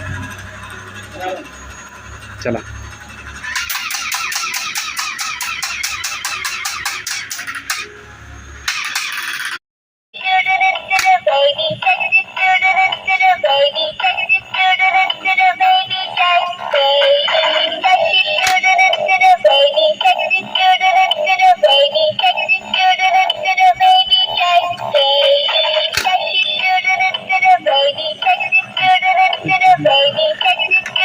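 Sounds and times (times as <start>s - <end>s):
synthetic voice singing: 10.2s - 31.0s.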